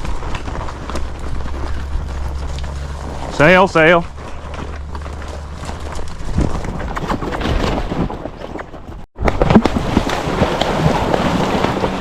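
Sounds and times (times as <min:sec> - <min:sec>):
horse hoofbeats: 0:00.0 - 0:09.1
wind noise on microphone: 0:06.0 - 0:08.4.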